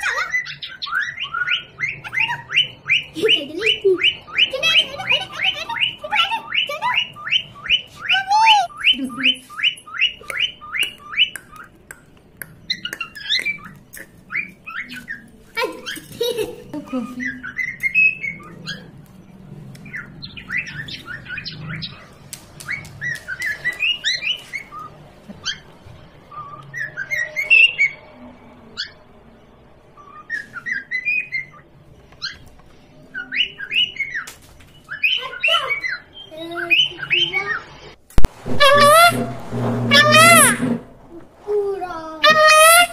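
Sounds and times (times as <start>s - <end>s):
parrot chirping and squawking: 0.0s - 11.8s, 12.6s - 16.2s, 34.9s - 41.0s, 42.2s - 42.9s.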